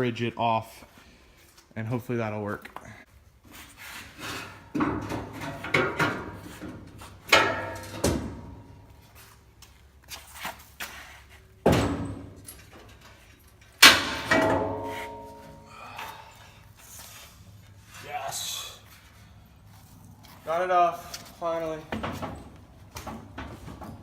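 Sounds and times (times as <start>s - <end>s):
heavy metal bangs and clanks: 4.7s - 8.8s, 13.8s - 15.7s.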